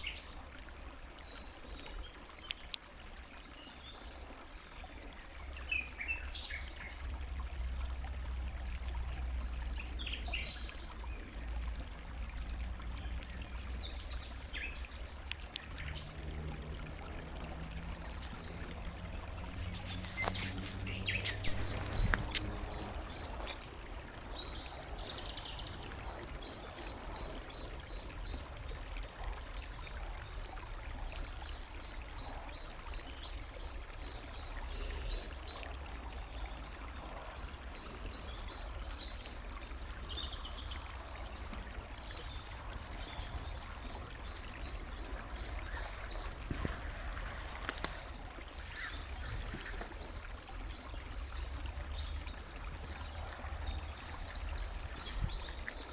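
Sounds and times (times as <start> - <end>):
running water hiss: 0.0 - 55.9
songbird high notes: 20.2 - 23.7.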